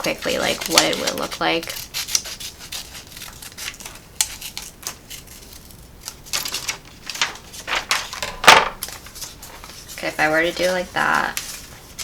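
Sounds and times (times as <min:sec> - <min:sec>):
scissors snipping paper: 0:00.0 - 0:06.8
paper rustling: 0:00.0 - 0:12.0.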